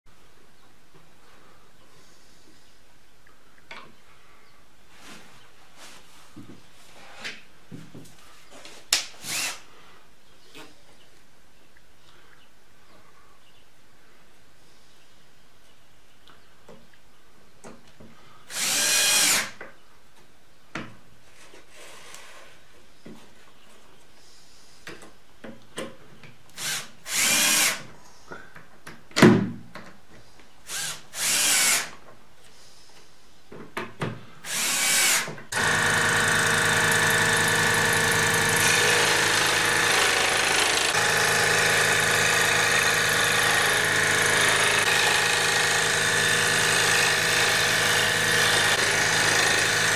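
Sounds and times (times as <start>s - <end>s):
power drill whirring: 9.2s - 9.6s, 18.5s - 19.6s, 26.6s - 27.8s, 30.7s - 31.9s, 34.4s - 49.9s.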